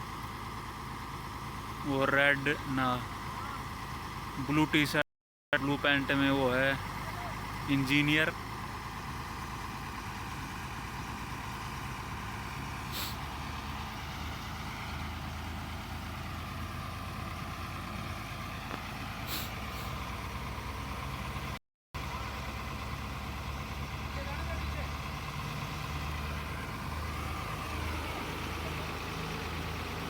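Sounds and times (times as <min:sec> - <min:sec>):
excavator diesel engine running: 0:00.0 - 0:05.0, 0:05.6 - 0:30.0
short hisses: 0:12.8 - 0:13.3, 0:19.2 - 0:20.1.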